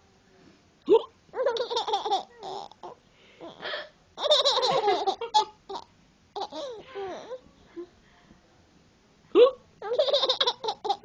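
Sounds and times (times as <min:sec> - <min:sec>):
woman hiccuping: 0:00.9 - 0:01.1, 0:09.4 - 0:09.6
baby laughing: 0:01.4 - 0:03.6, 0:04.2 - 0:07.4, 0:09.8 - 0:11.0.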